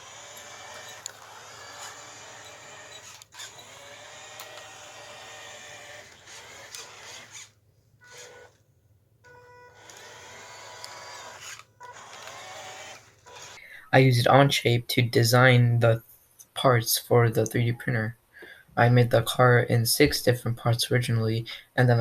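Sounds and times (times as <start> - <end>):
small gear motors whining: 0.0 - 8.6, 9.3 - 13.6.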